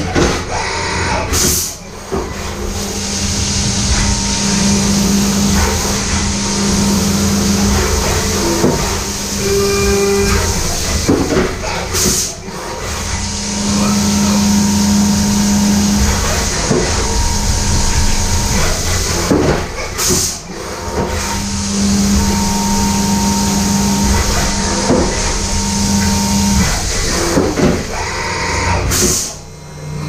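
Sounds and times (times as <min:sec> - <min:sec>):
machine mechanical hum: 0:00.0 - 0:30.0
hissing noise: 0:02.4 - 0:20.4.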